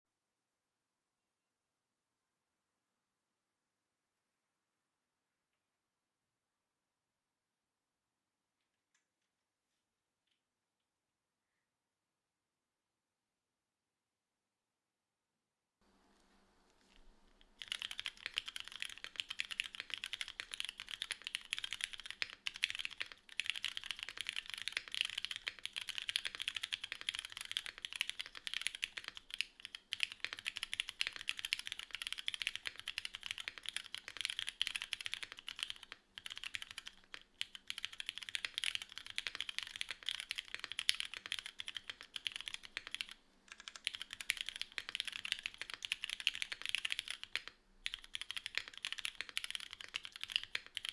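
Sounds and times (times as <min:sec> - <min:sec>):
typing on mechanical keyboard: 0:17.4 - 0:50.9.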